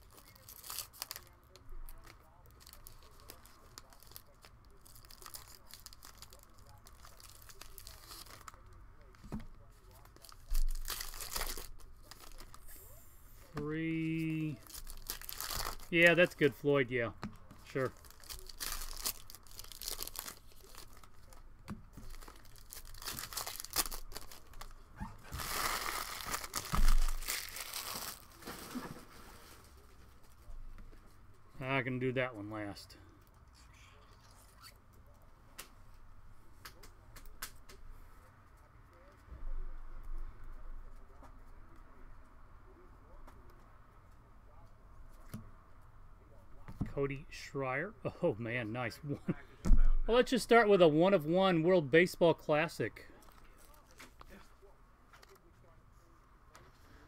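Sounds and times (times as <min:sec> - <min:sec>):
foil wrapper crinkling and tearing: 0:00.0 - 0:08.7, 0:09.8 - 0:12.7, 0:14.3 - 0:16.6, 0:17.7 - 0:21.4, 0:22.0 - 0:28.9
cards rustling: 0:09.2 - 0:12.7, 0:13.5 - 0:16.6, 0:17.4 - 0:30.4.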